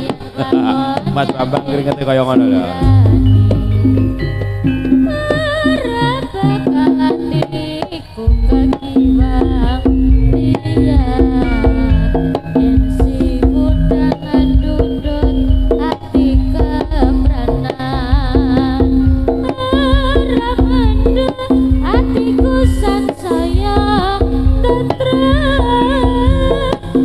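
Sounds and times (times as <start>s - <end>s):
hand drums beating: 0.0s - 27.0s
wavering melody with vibrato: 0.0s - 27.0s
held low note: 2.8s - 6.1s, 8.3s - 22.0s.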